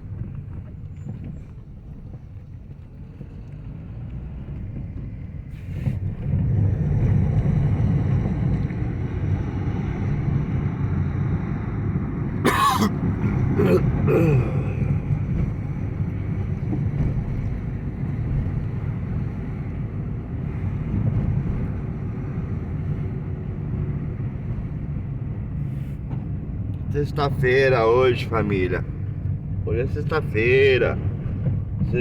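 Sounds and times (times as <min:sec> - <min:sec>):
person coughing: 0:12.4 - 0:15.0.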